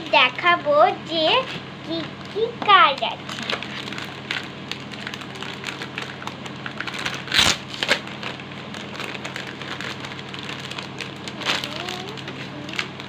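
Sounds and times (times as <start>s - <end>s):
paper and packaging rustling: 1.4s - 13.0s
loud crackle: 3.0s - 13.0s.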